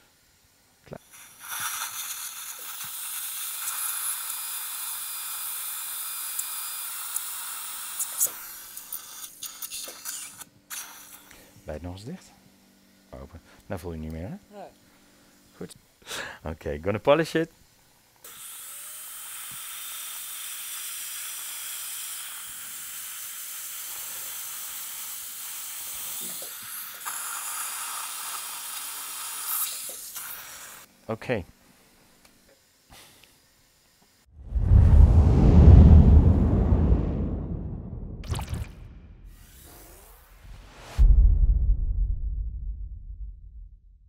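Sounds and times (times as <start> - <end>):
dental drill hiss and whine: 1.0 - 12.0, 18.2 - 30.9, 39.3 - 40.5.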